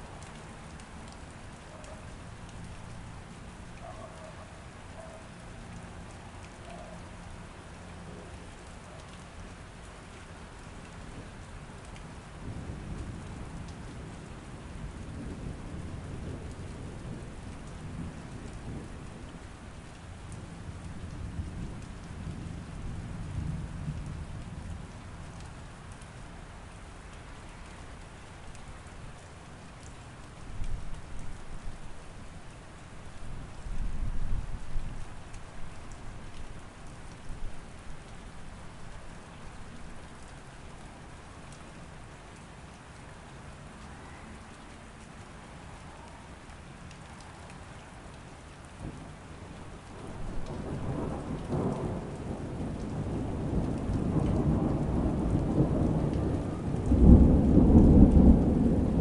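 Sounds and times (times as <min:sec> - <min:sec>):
steady rain falling: 0:00.0 - 0:59.0
low roll of thunder: 0:12.4 - 0:19.5, 0:20.3 - 0:25.4, 0:48.8 - 0:59.0.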